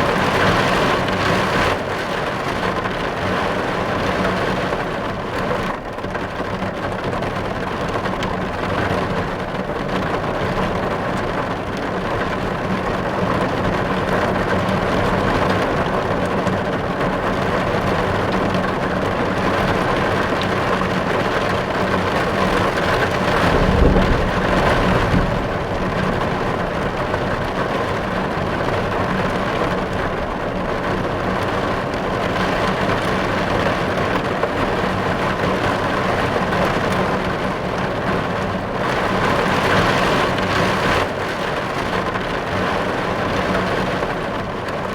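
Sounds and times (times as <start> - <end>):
heavy rain on car windows: 0.0 - 44.9
low rumble: 22.8 - 30.4.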